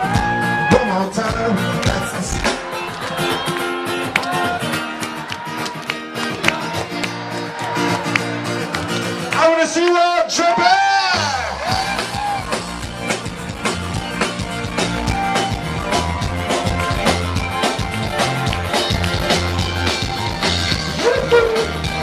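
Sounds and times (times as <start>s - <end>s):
drum kit beat: 0.0s - 4.6s, 11.2s - 22.0s
live band playing: 0.0s - 9.6s, 10.7s - 22.0s
bass: 0.0s - 22.0s.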